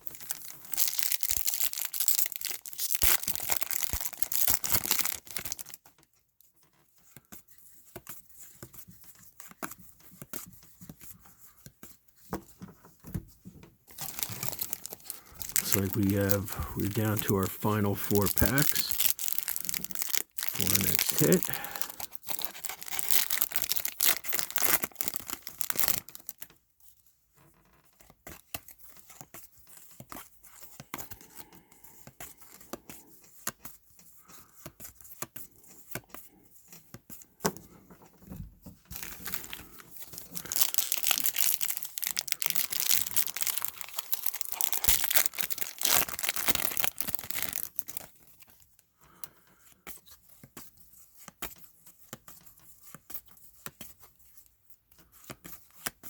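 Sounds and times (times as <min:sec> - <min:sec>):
wrappers tearing and crinkling: 0:00.0 - 0:05.8, 0:13.9 - 0:26.4, 0:38.9 - 0:48.2
cards rustling: 0:13.9 - 0:26.3, 0:38.9 - 0:48.1.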